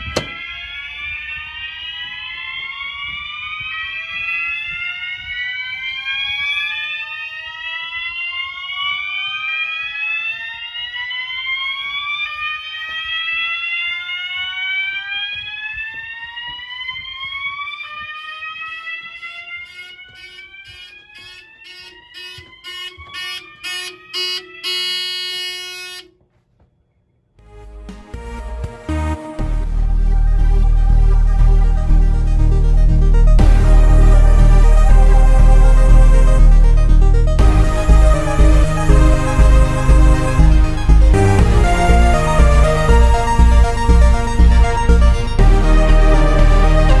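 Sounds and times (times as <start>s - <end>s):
rapid stuttering horn pulses: 18.2s - 26.2s, 27.5s - 47.0s
steady low tone: 27.4s - 47.0s.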